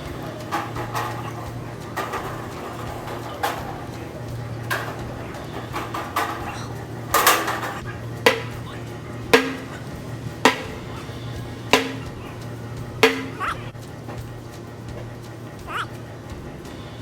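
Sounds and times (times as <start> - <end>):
background music with slow beat: 0.0 - 17.0
sharp percussive hit with ringing: 4.7 - 13.7.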